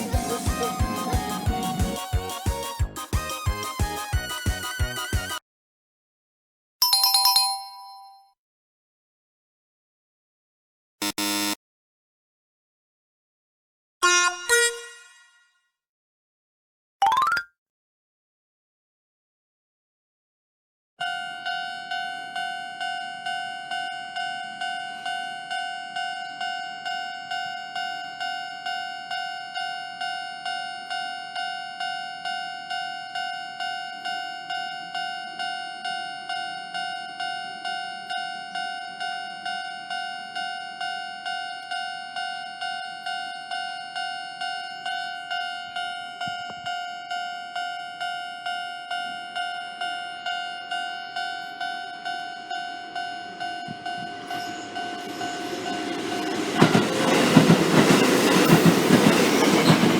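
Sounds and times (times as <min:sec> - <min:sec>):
level crossing bell ringing: 0:06.8 - 0:08.3.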